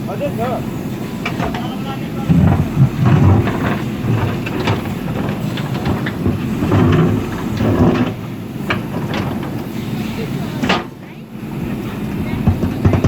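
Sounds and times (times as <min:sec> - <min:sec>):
diesel machine rumble: 0:00.0 - 0:13.0
machine knocks and clunks: 0:01.2 - 0:09.6, 0:12.3 - 0:13.0.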